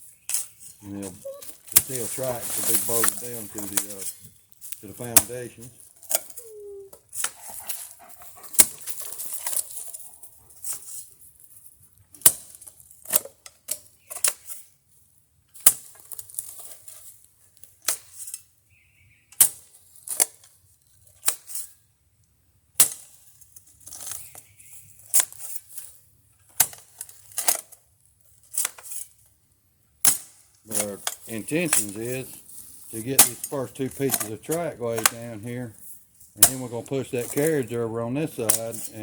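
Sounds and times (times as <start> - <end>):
blade scraping dirt: 0.1 - 6.4, 30.7 - 39.0
metal blade striking dirt: 36.4 - 37.4.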